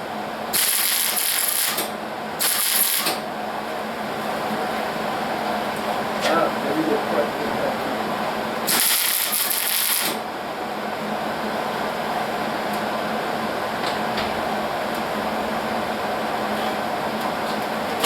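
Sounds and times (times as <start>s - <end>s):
welder bright hiss: 0.5s - 3.2s, 8.7s - 10.2s
welder crackling buzz: 0.5s - 3.3s, 8.5s - 10.3s.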